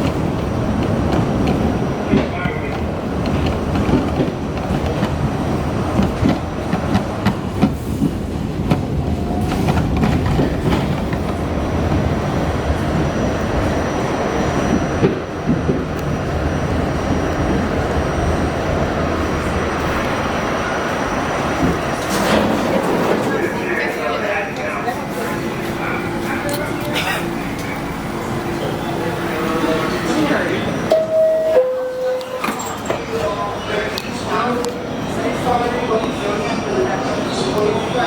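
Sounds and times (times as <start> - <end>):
clacks over rail joints: 0.0 - 12.0
rumble of wheels on rail: 0.0 - 38.0.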